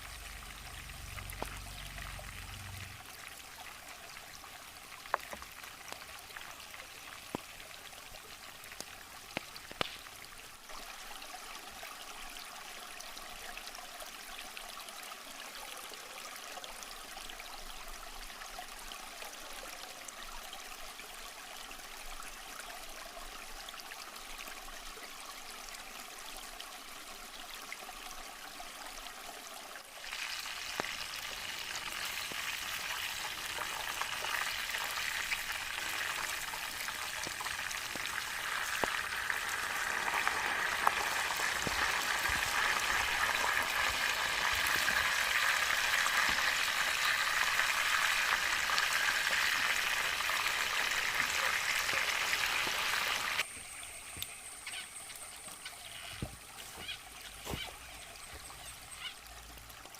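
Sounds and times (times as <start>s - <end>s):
food frying in hot oil: 0.0s - 3.7s, 30.0s - 56.2s
running water: 0.0s - 59.9s.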